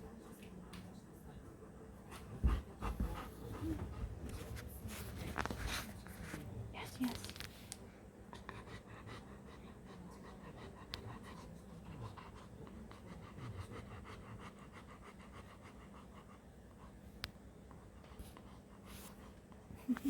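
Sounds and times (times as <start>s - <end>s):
dog panting quickly: 1.6s - 4.6s, 8.4s - 17.0s.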